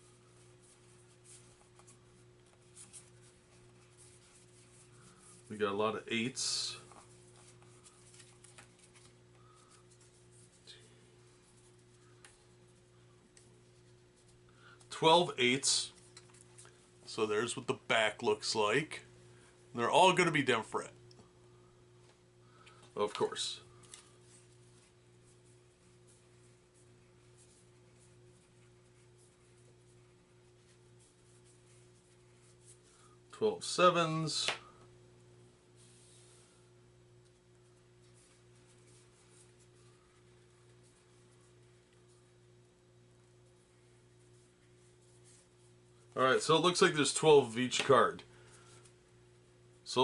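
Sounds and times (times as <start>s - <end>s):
faint room hum: 0.0s - 50.0s
playing cards rustling: 6.7s - 12.6s, 23.0s - 32.9s.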